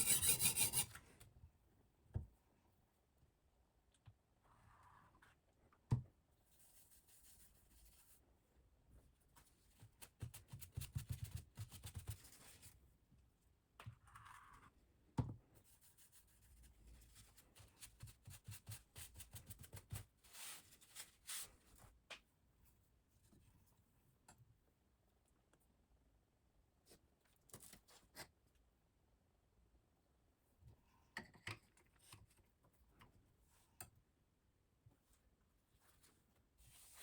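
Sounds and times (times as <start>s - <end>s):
sharpening stone scraping knife: 0.0s - 0.9s.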